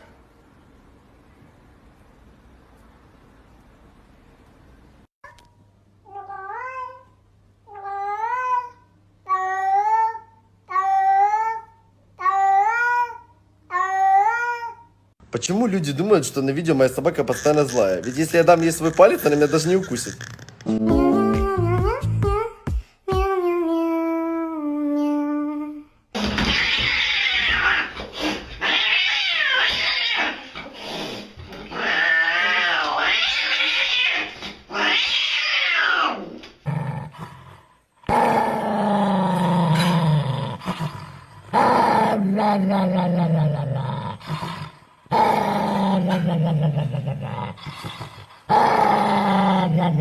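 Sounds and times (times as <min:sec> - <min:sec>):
cat growling and yowling: 0:26.2 - 0:37.2, 0:38.1 - 0:50.0.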